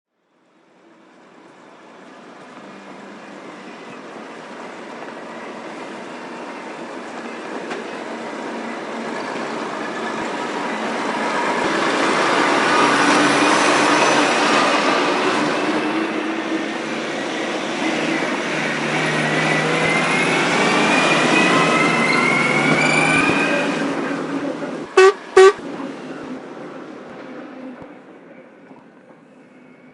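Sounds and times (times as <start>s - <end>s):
horn toots: 24.9s - 25.6s.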